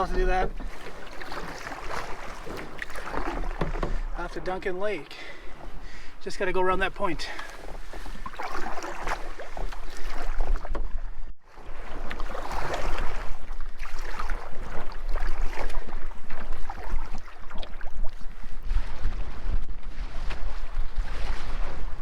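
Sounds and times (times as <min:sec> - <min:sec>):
water splashing against a canoe: 0:00.0 - 0:22.0
wind rumbling on microphone: 0:05.3 - 0:22.0.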